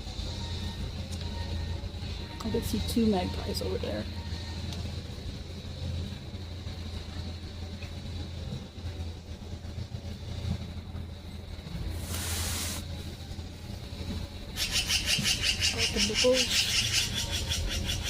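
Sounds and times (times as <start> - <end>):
low outdoor rumble: 0.0 - 18.0
short rushing hiss: 11.9 - 12.9.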